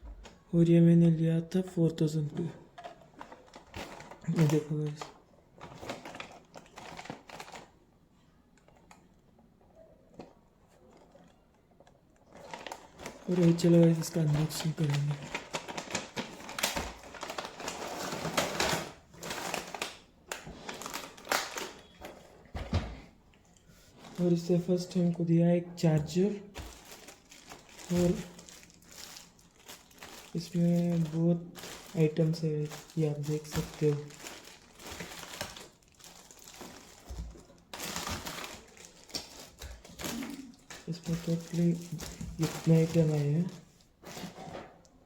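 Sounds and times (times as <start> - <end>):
cardboard packaging rustling: 2.2 - 7.8, 10.1 - 22.4, 25.8 - 44.8.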